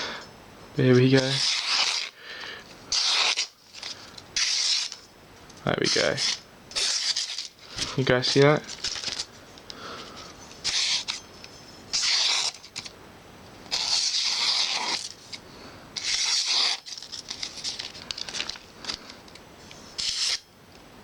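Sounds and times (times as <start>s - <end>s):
knife slicing through newspaper: 1.1s - 2.2s, 2.9s - 5.0s, 5.8s - 7.5s, 10.6s - 11.2s, 11.9s - 12.9s, 13.7s - 15.2s, 16.0s - 17.9s, 20.0s - 20.5s.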